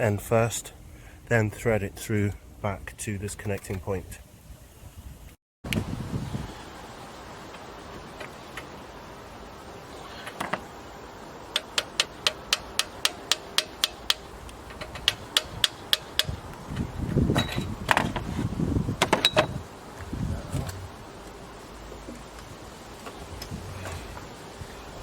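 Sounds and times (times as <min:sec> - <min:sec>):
ratchet wrench clicking: 0:11.5 - 0:16.4.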